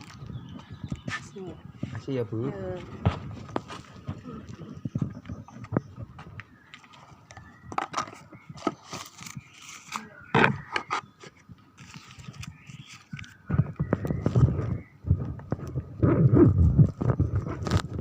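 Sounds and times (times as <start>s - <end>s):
objects being handled: 3.0s - 14.7s.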